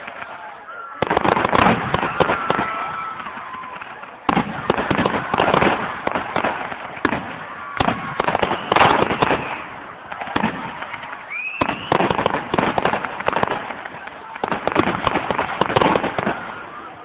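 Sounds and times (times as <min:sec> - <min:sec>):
fireworks bursting with bangs: 0:00.0 - 0:17.0
fireworks crackling: 0:00.0 - 0:17.0
rising firework whistle: 0:00.6 - 0:03.9, 0:07.6 - 0:10.4, 0:11.0 - 0:13.1.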